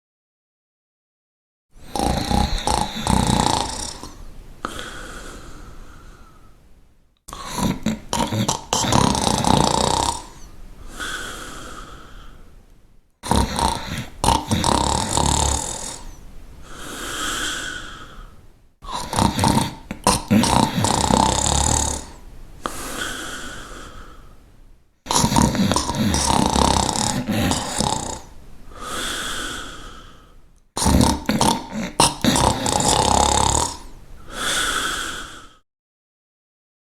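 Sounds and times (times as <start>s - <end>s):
rattling snore: 1.8s - 4.2s, 7.3s - 10.4s, 13.2s - 16.2s, 18.9s - 22.2s, 25.1s - 28.3s, 30.8s - 33.9s.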